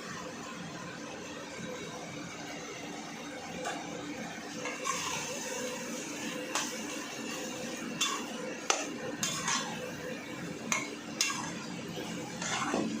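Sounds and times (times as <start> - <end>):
metal spoon scraping a pan: 4.6 - 5.4, 6.5 - 10.0, 10.6 - 13.0.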